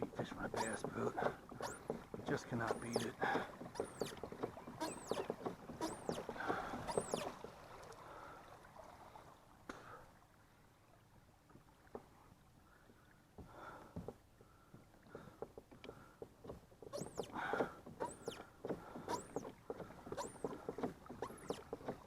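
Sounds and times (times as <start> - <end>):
kayak knocks: 0.0 - 7.7, 12.9 - 22.0
water sounds: 0.0 - 22.0
high squeak: 0.5 - 7.3, 16.9 - 17.4, 18.0 - 18.4, 19.1 - 19.5, 20.1 - 20.6.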